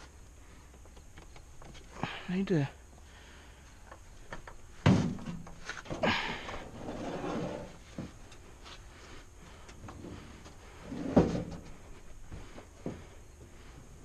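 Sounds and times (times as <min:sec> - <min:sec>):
clattering and scraping: 0:03.9 - 0:08.4, 0:09.8 - 0:13.0.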